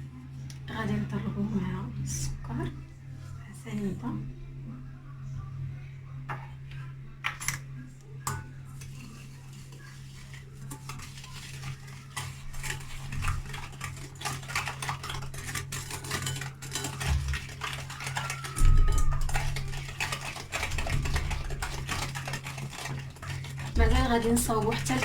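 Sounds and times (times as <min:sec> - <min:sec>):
utensil clinking against bowl: 0:07.2 - 0:25.0.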